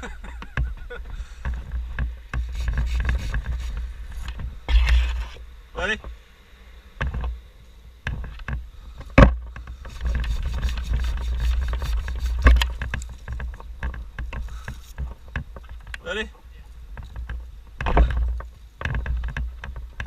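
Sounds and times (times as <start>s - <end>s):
wind buffeting microphone: 0.0s - 20.0s
wood and debris scraping and rattling: 8.1s - 20.0s.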